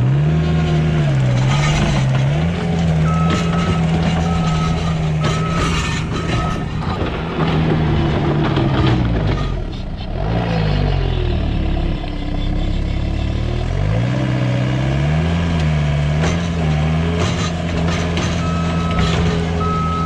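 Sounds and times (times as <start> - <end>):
diesel engine running hard: 0.0 - 20.0
metal clanks: 1.3 - 10.1
backup alarm beeping: 3.0 - 6.8, 18.4 - 20.0.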